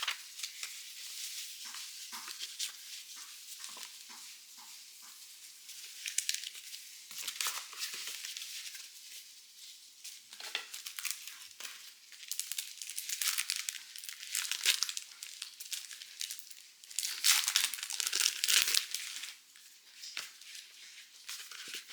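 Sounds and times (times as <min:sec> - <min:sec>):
packaging crinkling: 0:10.4 - 0:19.4.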